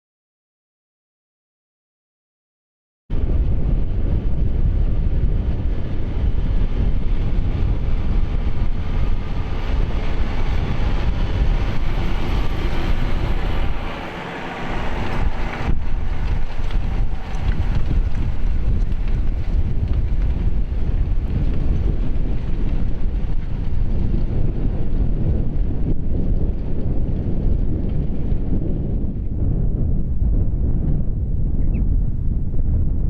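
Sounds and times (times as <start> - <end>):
wind buffeting microphone: 3.1 - 33.0
tractor engine running: 5.2 - 29.0.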